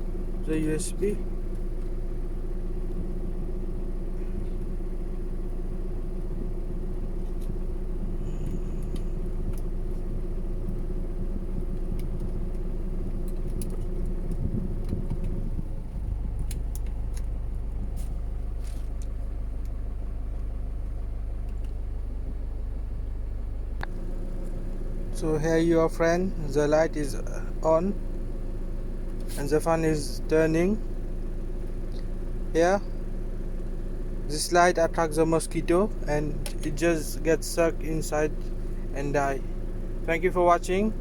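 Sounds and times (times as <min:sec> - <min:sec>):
small electric fan motor humming: 0:00.0 - 0:34.6.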